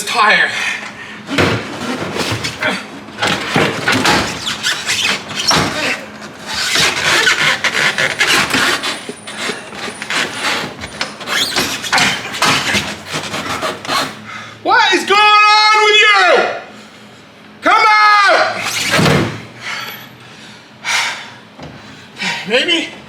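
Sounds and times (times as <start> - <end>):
rubber and metal scraping and knocking: 1.3 - 14.2.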